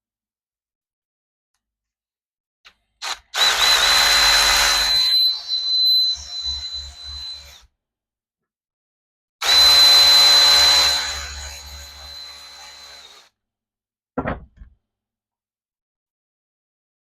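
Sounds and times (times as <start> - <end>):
power drill motor whine: 3.0 - 7.7, 9.4 - 13.3.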